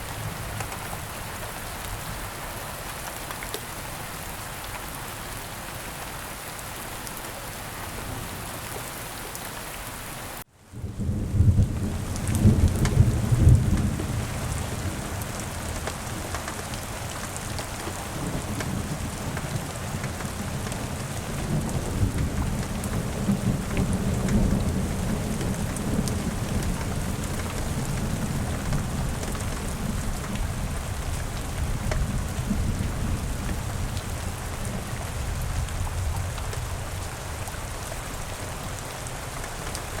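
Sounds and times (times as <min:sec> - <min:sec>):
steady rain falling: 0:00.0 - 0:40.0
thunder rumbling: 0:10.8 - 0:15.8.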